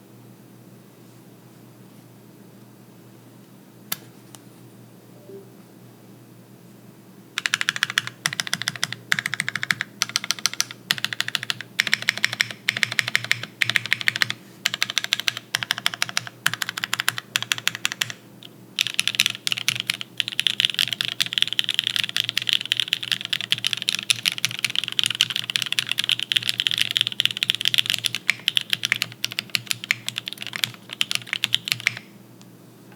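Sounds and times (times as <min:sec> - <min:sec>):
mechanical keyboard typing: 0:07.4 - 0:18.2, 0:18.8 - 0:32.1.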